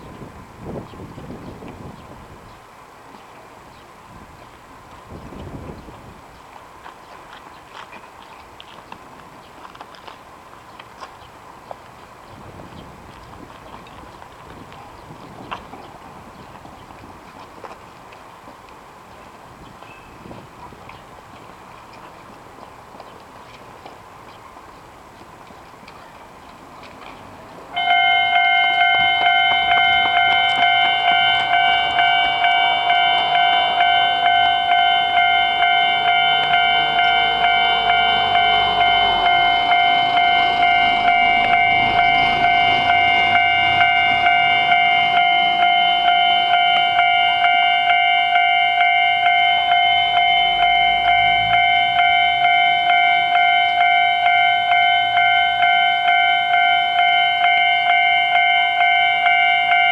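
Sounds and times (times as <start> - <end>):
level crossing warning bell: 27.7 - 59.9.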